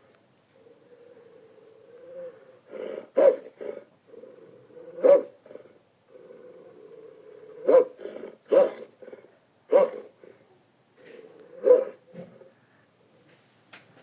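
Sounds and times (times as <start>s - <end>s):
low continuous vocal sound: 0.0s - 12.8s
sharp dog-like barks: 3.2s - 3.8s, 5.0s - 5.4s, 7.6s - 8.9s, 9.7s - 10.1s, 11.6s - 12.0s.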